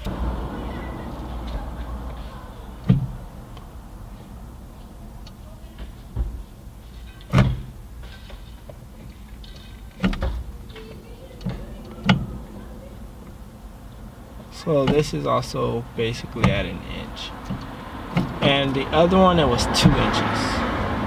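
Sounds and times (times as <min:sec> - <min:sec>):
low rumble: 0:00.0 - 0:21.0
gear shifter clunks: 0:01.4 - 0:13.4, 0:14.7 - 0:15.2, 0:16.2 - 0:16.8, 0:17.4 - 0:18.7.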